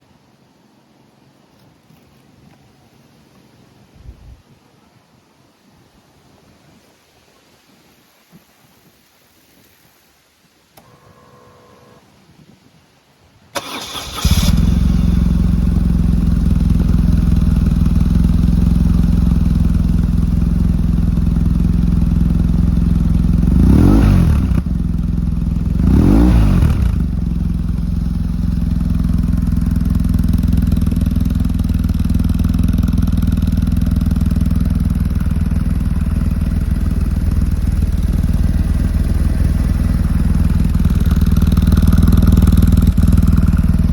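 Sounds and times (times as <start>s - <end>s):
motorcycle engine cranking: 13.6s - 16.0s
motorcycle engine idling: 13.6s - 43.9s.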